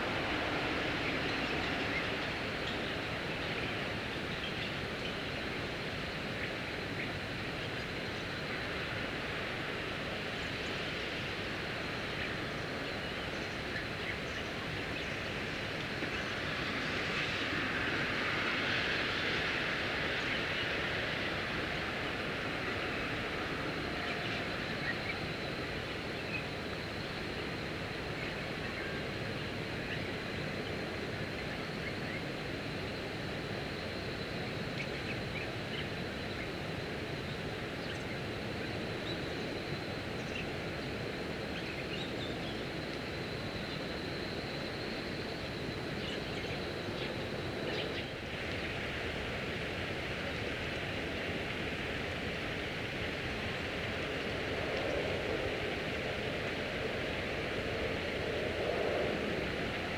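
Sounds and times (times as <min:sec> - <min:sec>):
outdoor background noise: 0:00.0 - 0:59.9.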